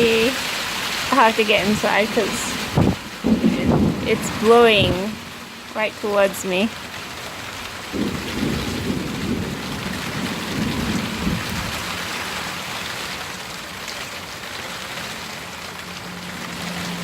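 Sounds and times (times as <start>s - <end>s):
thunder rumbling: 0.0s - 12.7s
rain falling: 0.0s - 17.0s.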